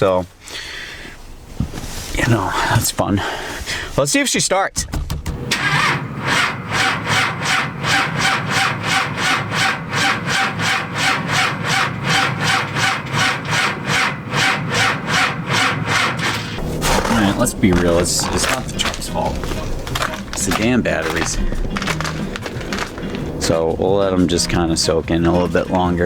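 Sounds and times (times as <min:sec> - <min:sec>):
truck engine cranking slowly: 0:05.4 - 0:26.0.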